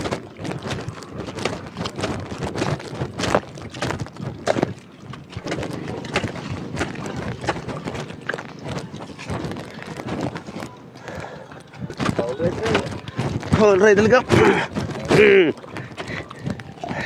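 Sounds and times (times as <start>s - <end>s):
wind noise: 0.0s - 17.0s.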